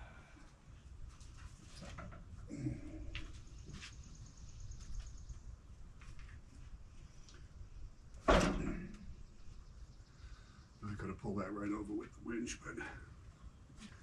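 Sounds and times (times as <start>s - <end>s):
heavy log thump: 8.3s - 9.0s.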